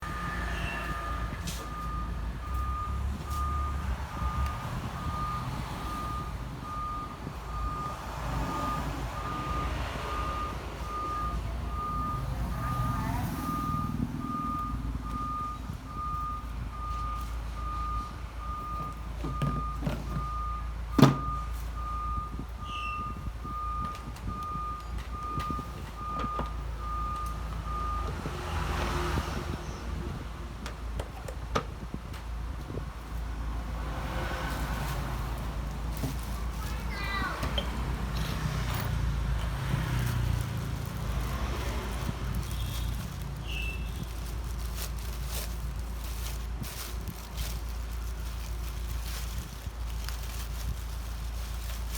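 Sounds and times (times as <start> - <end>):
reversing alarm beeping: 0.0 - 28.3
low vehicle rumble: 0.0 - 51.9.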